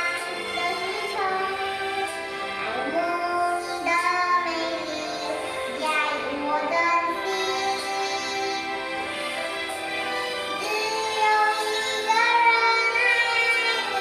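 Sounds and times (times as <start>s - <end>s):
girl singing: 0.0s - 1.9s, 2.6s - 8.7s, 10.6s - 14.0s
backing music: 0.0s - 14.0s.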